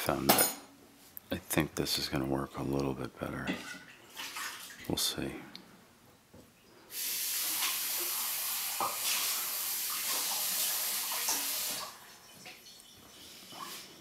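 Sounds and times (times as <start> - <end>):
steady hiss: 6.8 - 11.9.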